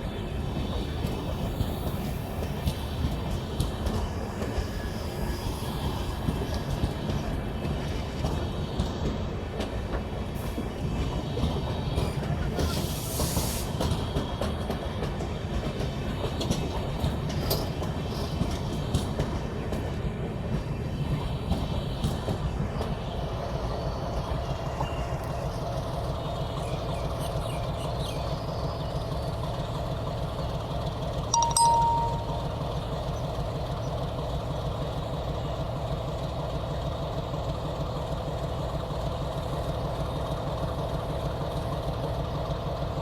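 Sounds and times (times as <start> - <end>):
train wheels clattering on track: 0.0 - 43.0
brief loud tone: 31.4 - 32.6
steady mid-pitched tone: 31.4 - 32.6.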